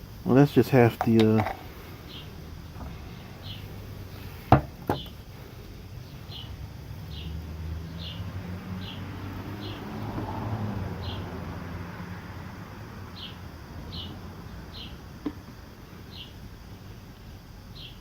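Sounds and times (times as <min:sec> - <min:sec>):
small bird chirping: 0:00.8 - 0:05.2, 0:05.9 - 0:09.9, 0:13.2 - 0:15.0, 0:16.0 - 0:16.4, 0:17.7 - 0:18.0.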